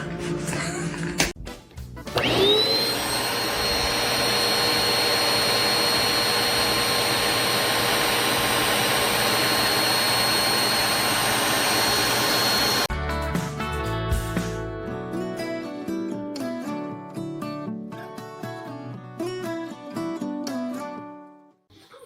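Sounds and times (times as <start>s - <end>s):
electric motor whining: 2.2s - 12.9s.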